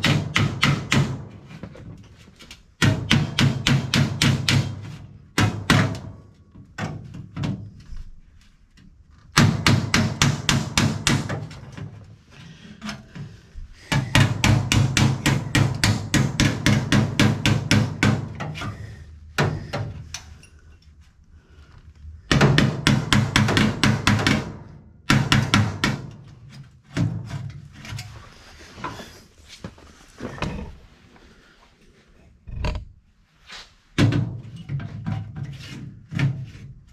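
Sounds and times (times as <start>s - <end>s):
hammer striking sheet steel: 0.0s - 1.6s, 2.8s - 6.2s, 13.9s - 18.6s.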